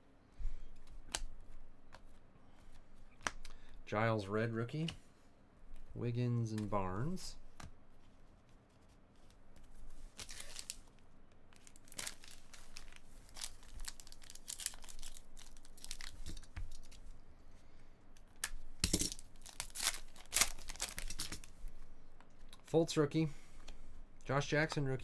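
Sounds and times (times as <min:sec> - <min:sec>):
wrappers tearing and crinkling: 0:10.1 - 0:10.9, 0:11.6 - 0:17.0, 0:18.9 - 0:21.5.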